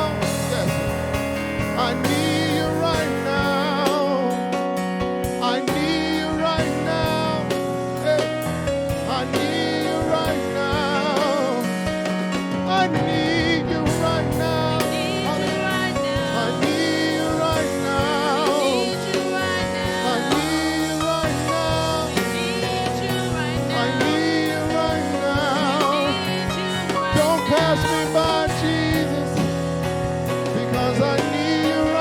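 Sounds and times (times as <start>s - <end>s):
gospel singing over chords and beat: 0.0s - 32.0s.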